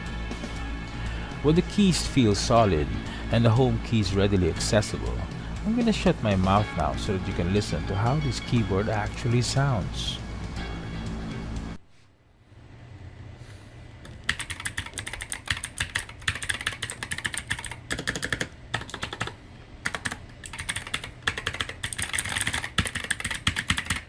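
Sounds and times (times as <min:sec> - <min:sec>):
clicky mechanical keyboard typing: 0:14.1 - 0:24.0.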